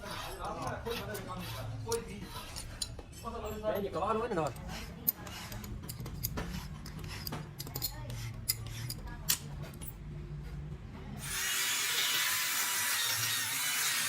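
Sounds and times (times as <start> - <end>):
tools clicking and clinking: 1.9 - 10.0.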